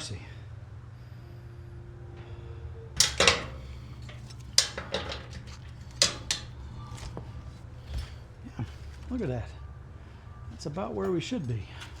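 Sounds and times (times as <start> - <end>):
metal parts clanking: 3.0 - 9.1
steady low hum: 3.0 - 10.4.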